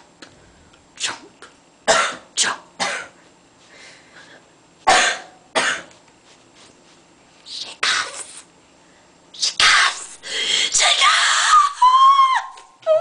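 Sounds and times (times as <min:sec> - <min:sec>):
person coughing: 0:01.9 - 0:03.2, 0:04.9 - 0:05.9.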